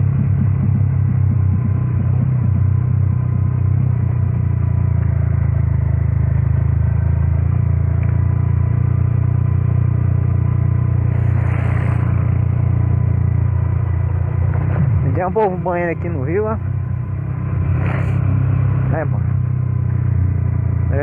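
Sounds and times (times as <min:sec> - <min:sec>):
motorcycle engine running: 0:00.0 - 0:21.0
short hiss: 0:11.1 - 0:12.3, 0:17.8 - 0:18.2.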